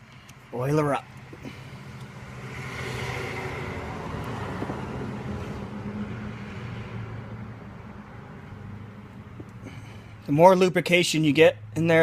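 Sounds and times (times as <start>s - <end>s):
low engine hum: 1.1s - 10.3s.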